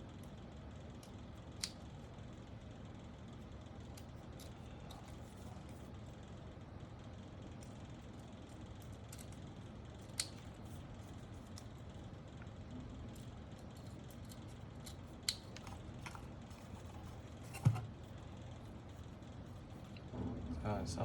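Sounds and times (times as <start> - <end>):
scissors snipping: 1.0 - 1.8, 8.8 - 9.4, 10.0 - 10.5, 13.2 - 16.2.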